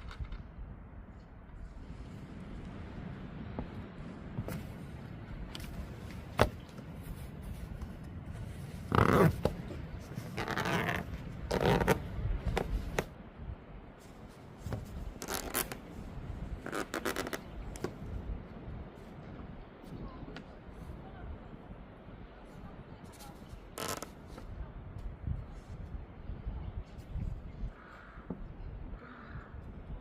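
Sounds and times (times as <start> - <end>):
rustling and scraping: 4.4 - 13.1, 14.0 - 16.0, 16.6 - 18.0, 23.0 - 24.5.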